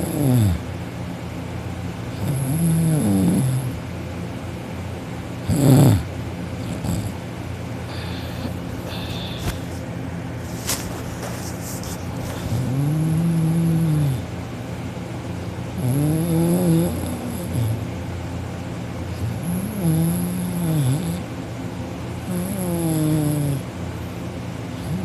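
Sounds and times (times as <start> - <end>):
sleeping man moaning: 0.0 - 0.6, 2.2 - 3.8, 5.5 - 6.1, 7.9 - 9.6, 12.5 - 14.3, 15.8 - 17.8, 19.3 - 21.2.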